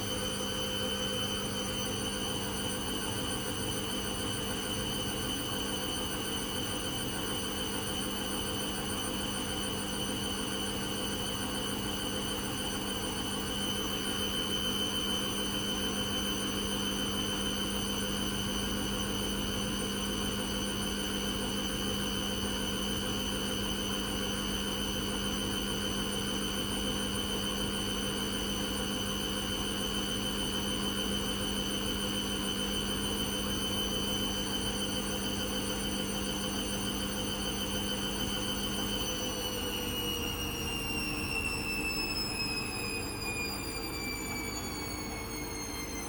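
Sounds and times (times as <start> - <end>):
washing machine humming: 27.0 - 46.0.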